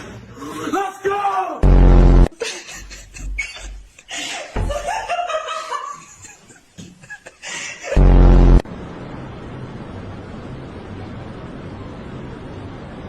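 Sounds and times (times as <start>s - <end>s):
loud low buzzing tone: 1.6s - 2.3s, 8.0s - 13.0s
person laughing and snickering: 2.3s - 8.1s.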